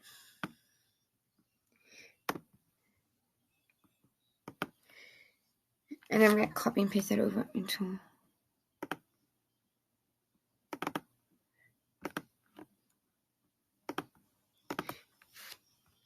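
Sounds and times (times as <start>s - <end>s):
keyboard and mouse clicks: 2.2s - 2.5s, 3.7s - 4.8s, 8.8s - 9.1s, 10.7s - 11.2s, 12.0s - 13.0s, 13.8s - 15.7s.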